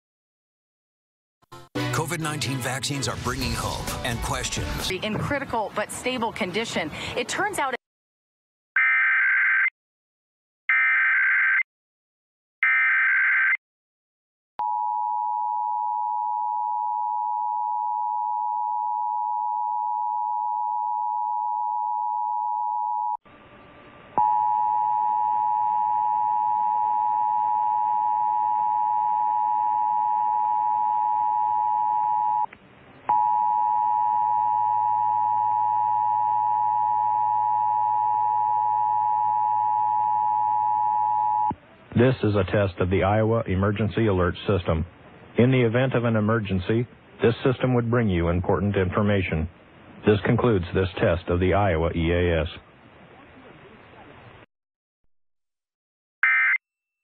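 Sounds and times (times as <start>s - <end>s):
background hiss and hum: 23.3s - 54.5s.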